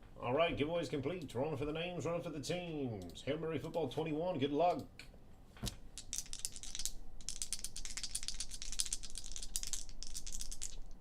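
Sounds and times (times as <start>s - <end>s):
dice rattling: 5.7s - 11.0s.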